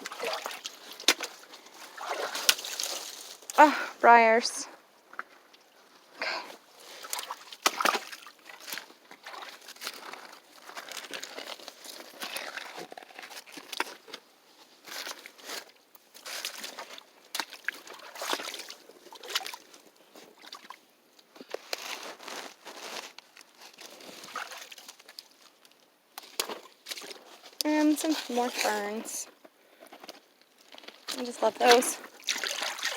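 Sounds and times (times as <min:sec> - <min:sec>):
boots sloshing through water: 0:00.0 - 0:03.5, 0:07.0 - 0:12.8, 0:16.2 - 0:20.8, 0:24.2 - 0:25.0, 0:31.1 - 0:32.9.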